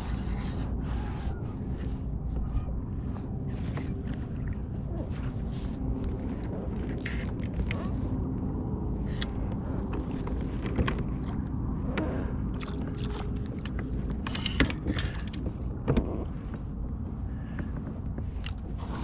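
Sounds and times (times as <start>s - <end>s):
low rumble: 0.0s - 19.0s.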